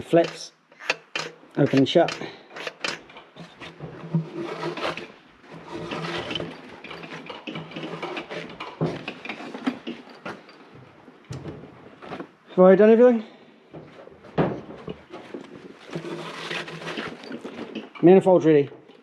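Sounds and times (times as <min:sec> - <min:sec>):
valve flaps clicking and clattering: 0:00.0 - 0:03.3.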